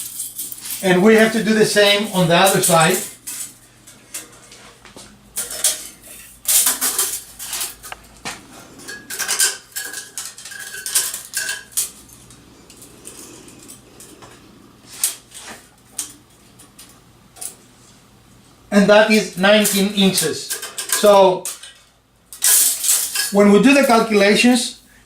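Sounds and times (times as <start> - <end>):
steel tape measure clicking and rattling: 5.4 - 8.0, 19.6 - 23.4.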